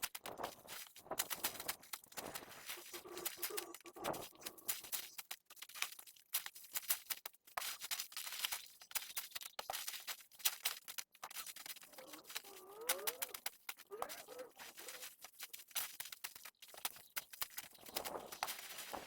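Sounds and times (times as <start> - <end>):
dry leaves crackling and rustling: 0.0 - 19.0
bird calling: 2.3 - 4.8, 11.9 - 15.2.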